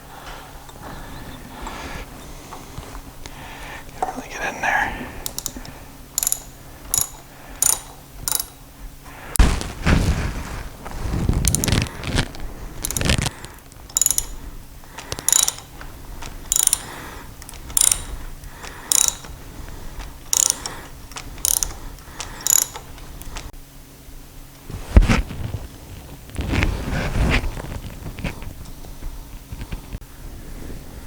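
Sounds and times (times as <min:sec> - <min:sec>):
thread tap ratcheting scrape: 0:05.3 - 0:08.6, 0:11.4 - 0:13.3, 0:13.9 - 0:14.4, 0:15.0 - 0:15.7, 0:16.5 - 0:18.2, 0:18.9 - 0:19.4, 0:20.3 - 0:23.5.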